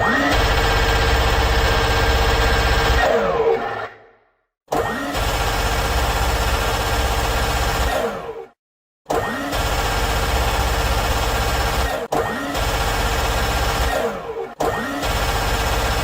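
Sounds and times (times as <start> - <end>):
minigun firing rapid bursts: 5.1 - 8.0, 9.5 - 14.1, 14.9 - 16.0.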